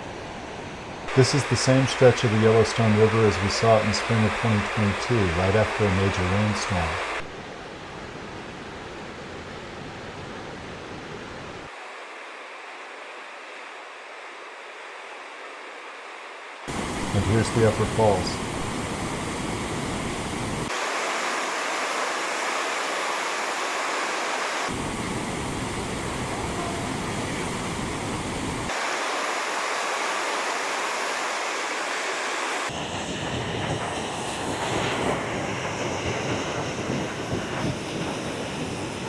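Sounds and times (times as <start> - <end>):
waterfall roaring: 1.1 - 7.3, 16.7 - 32.7.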